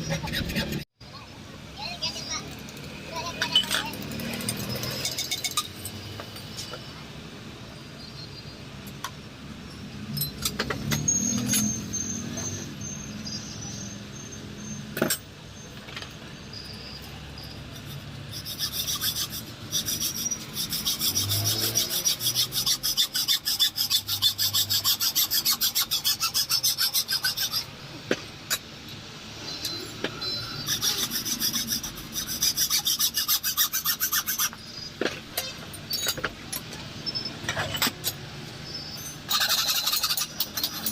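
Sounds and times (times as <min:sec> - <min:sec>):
hand tool rasping on metal: 0:17.7 - 0:27.7, 0:30.6 - 0:35.5, 0:39.3 - 0:40.9.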